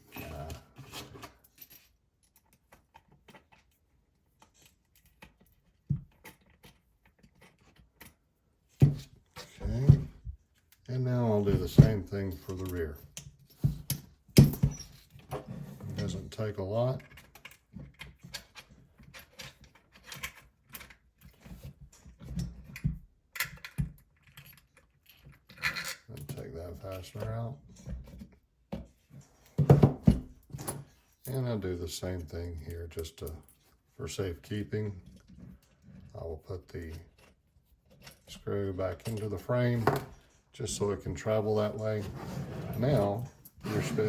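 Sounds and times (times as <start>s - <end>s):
small clicks and taps of metal parts: 17.0s - 27.4s.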